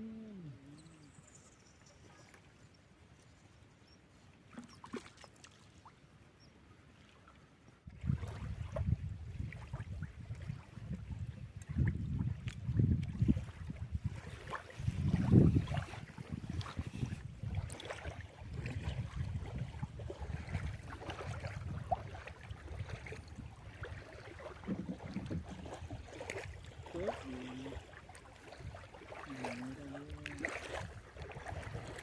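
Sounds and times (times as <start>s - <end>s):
faint wavering voices: 0.0s - 1.5s
wind buffeting microphone: 7.9s - 27.4s, 30.1s - 32.0s
sea washing: 13.1s - 32.0s.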